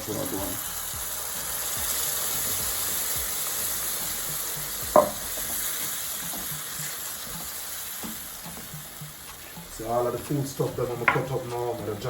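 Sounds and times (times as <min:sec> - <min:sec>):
spices sizzling in a pot: 0:00.0 - 0:12.0
utensil clanking against pot: 0:04.9 - 0:11.6.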